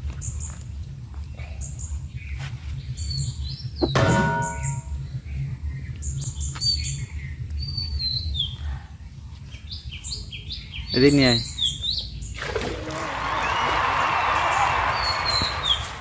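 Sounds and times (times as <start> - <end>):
small birds chirping: 0.0 - 4.0, 4.6 - 12.5, 13.5 - 16.0
steady low rumble: 0.0 - 12.3
loud bird call: 12.6 - 16.0.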